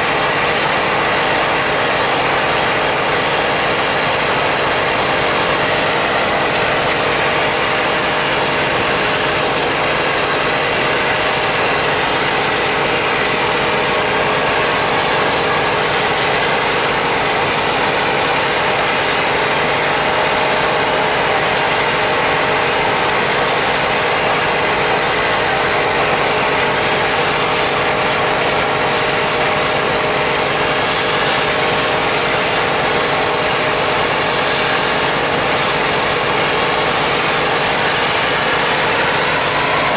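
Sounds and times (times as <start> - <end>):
mechanical running noise: 0.0 - 39.9.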